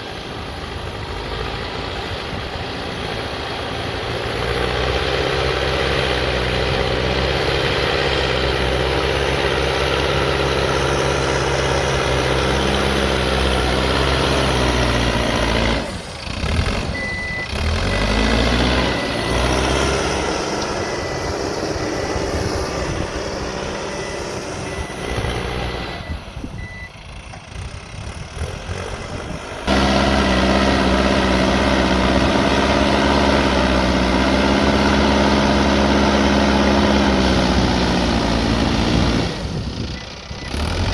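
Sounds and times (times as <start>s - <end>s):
diesel engine running: 0.0s - 40.9s
reversing alarm tone: 16.7s - 26.9s.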